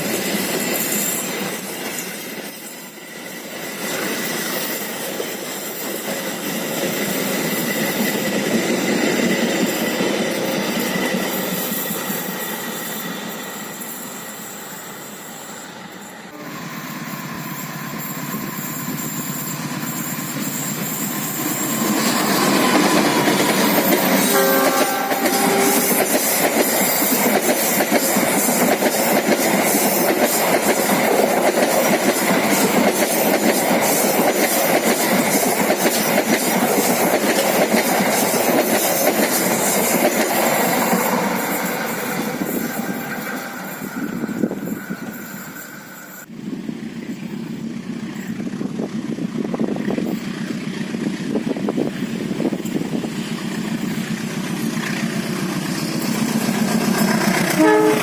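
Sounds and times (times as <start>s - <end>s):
diesel locomotive passing: 0.0s - 58.0s
train horn: 16.3s - 17.9s, 24.1s - 26.3s, 57.4s - 58.0s.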